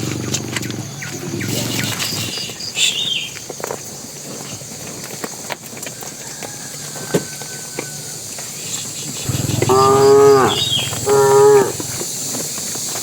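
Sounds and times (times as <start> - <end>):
cattle hooves stepping: 0.0 - 13.0
steady outdoor hiss: 0.0 - 13.0.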